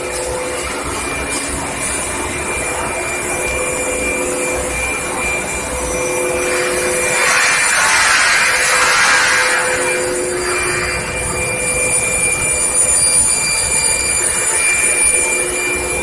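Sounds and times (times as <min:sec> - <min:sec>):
steady whining tones: 0:00.0 - 0:16.0
machinery hiss: 0:05.0 - 0:11.9.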